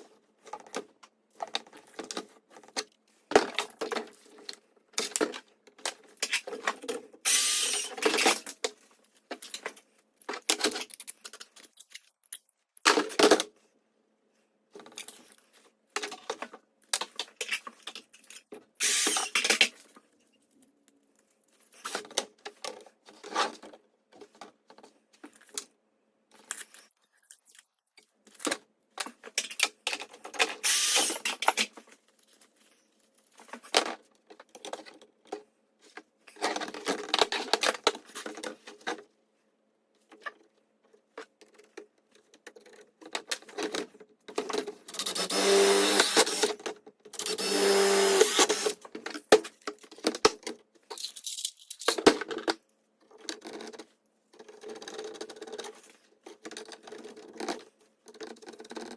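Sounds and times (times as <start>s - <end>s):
tools clicking and rattling: 48.2s - 52.5s.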